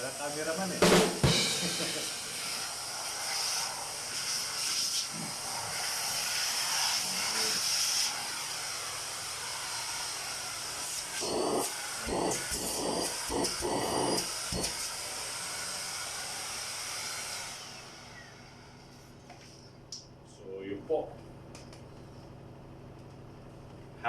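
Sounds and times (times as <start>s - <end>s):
vacuum cleaner suction hiss: 0.0s - 19.0s.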